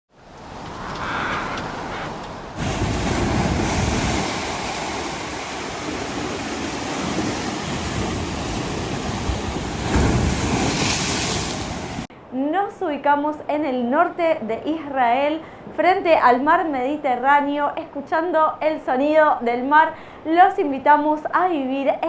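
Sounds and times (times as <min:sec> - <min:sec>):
sea waves breaking: 0:00.1 - 0:12.1.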